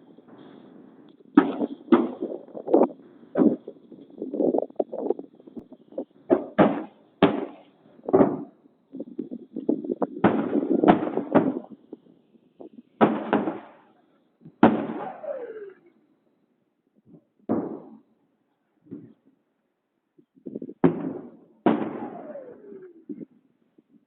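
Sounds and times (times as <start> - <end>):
shelling explosion bangs: 1.4 - 2.7, 6.3 - 8.5, 10.2 - 11.8, 13.0 - 13.8, 14.6 - 15.5, 20.8 - 22.9.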